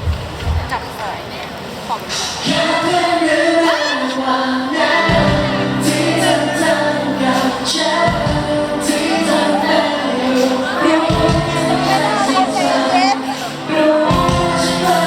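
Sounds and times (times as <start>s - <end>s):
live pop band: 2.0s - 15.0s
person singing: 2.4s - 15.0s
bass notes: 5.1s - 15.0s.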